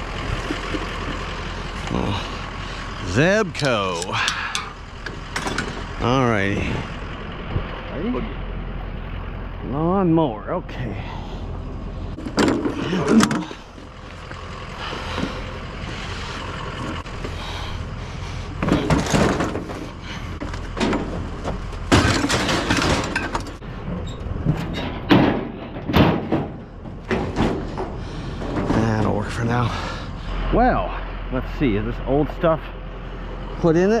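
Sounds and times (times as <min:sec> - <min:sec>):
low steady hum: 0:00.0 - 0:34.0
metal clattering bangs and thumps: 0:04.2 - 0:06.0, 0:12.2 - 0:13.6, 0:18.6 - 0:23.6, 0:24.3 - 0:29.2.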